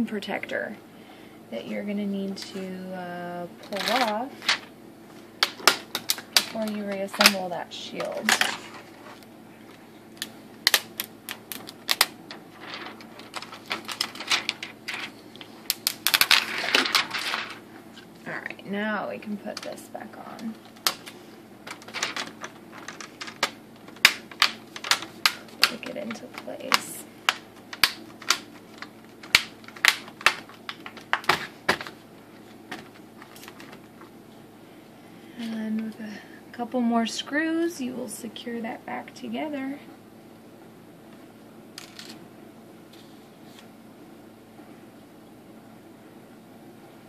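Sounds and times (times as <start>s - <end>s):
protector film peeling: 8.7s - 17.6s, 20.4s - 34.1s.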